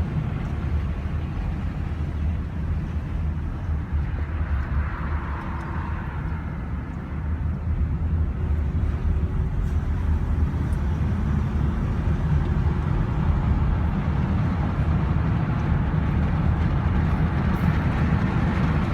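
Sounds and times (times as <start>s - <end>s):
vehicle rumbling: 0.0s - 18.9s.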